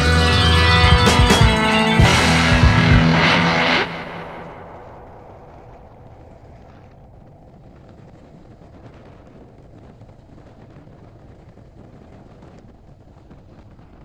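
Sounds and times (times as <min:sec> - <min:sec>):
background music: 0:00.0 - 0:05.1
motorcycle engine rumble: 0:00.0 - 0:06.1.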